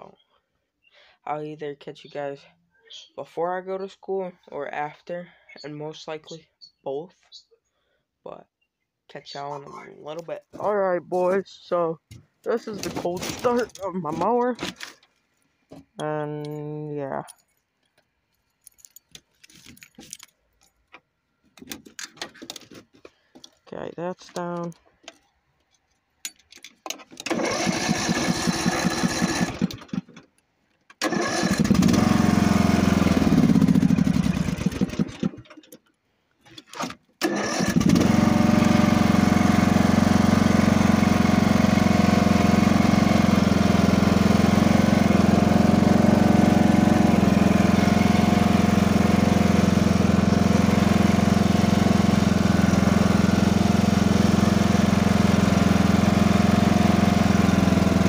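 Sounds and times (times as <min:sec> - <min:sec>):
lawn mower engine cranking and running: 0:10.1 - 0:16.8, 0:17.8 - 0:58.0.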